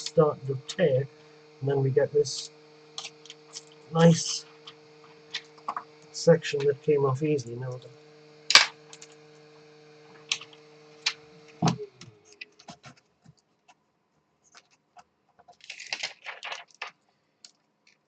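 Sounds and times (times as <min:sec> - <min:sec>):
low steady hum: 0:00.0 - 0:12.9.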